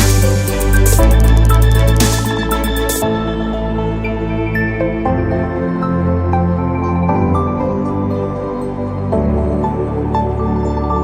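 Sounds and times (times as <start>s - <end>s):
electronic music with heavy bass: 0.0s - 6.6s.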